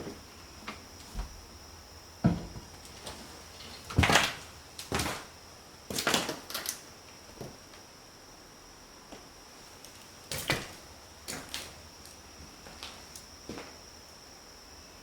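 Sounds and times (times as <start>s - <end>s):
faint high whine: 0.0s - 15.0s
low thud: 2.2s - 2.7s.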